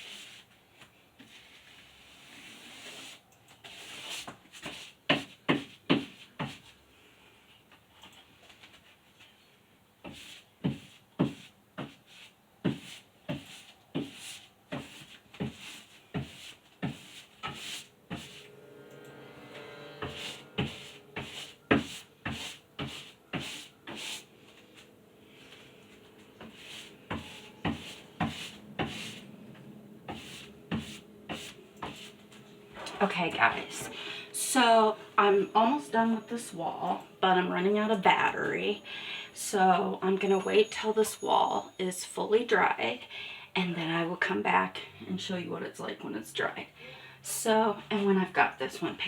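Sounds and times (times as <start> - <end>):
paint roller swishing on wall: 0.0 - 6.9, 10.0 - 36.5.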